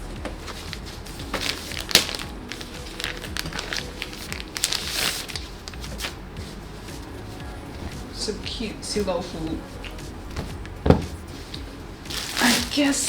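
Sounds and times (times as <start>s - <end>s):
plastic packaging crinkling: 0.0s - 8.2s, 9.2s - 13.0s
background music: 0.0s - 13.0s.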